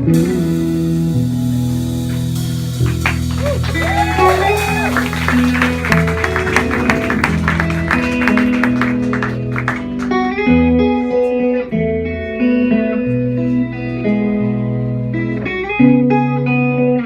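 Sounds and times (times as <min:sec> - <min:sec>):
live band with guitar: 0:00.0 - 0:17.0.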